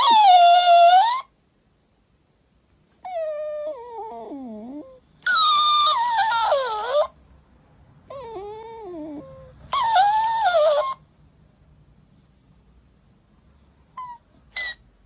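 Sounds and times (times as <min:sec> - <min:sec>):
dog howling: 0:00.0 - 0:01.3, 0:03.1 - 0:07.1, 0:08.1 - 0:11.0.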